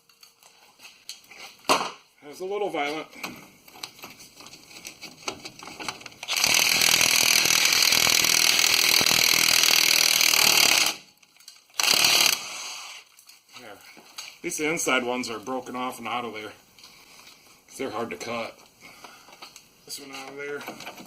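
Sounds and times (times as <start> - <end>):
power cutting tool on metal: 6.3 - 11.0, 11.8 - 12.8.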